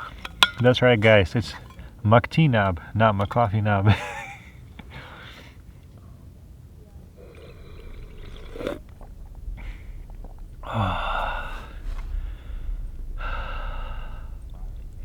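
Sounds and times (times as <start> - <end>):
person slurping tea: 7.2 - 9.1.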